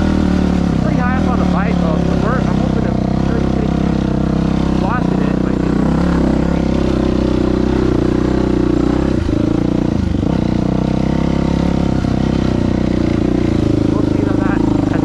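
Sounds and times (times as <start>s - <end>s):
dirt bike engine running: 0.0s - 15.0s.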